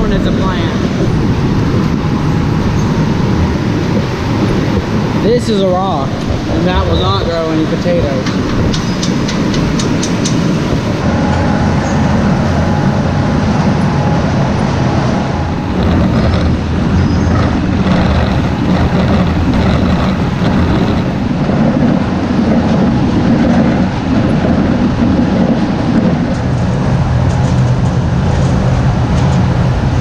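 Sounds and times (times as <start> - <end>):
potato cutter machine rumbling: 15.4 - 21.4.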